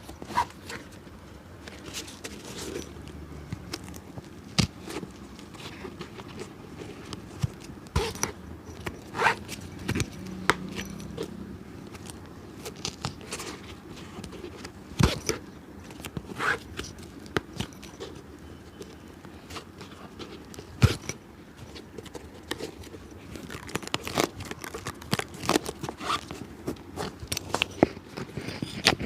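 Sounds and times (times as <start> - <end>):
tool scraping leather: 4.6 - 11.3, 16.1 - 18.2, 21.8 - 29.0.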